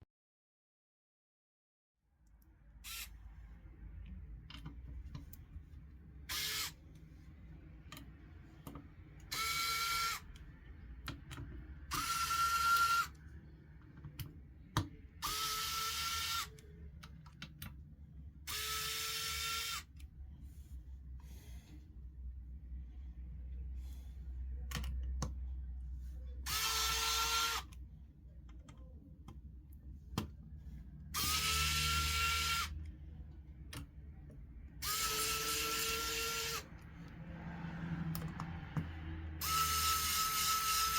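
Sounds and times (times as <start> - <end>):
electric screwdriver whining: 6.3 - 6.8, 9.3 - 10.3, 11.9 - 13.1, 15.2 - 16.6, 26.5 - 27.7, 31.2 - 32.8, 34.8 - 36.7, 39.4 - 40.9.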